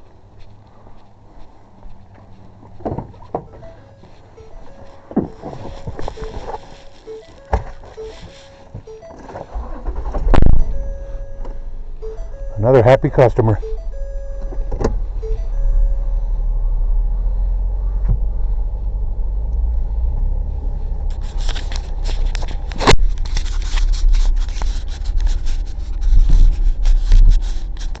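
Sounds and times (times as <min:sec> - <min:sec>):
scraping and rustling: 0:02.3 - 0:10.3, 0:21.1 - 0:28.0
car engine rumble from inside: 0:07.7 - 0:28.0.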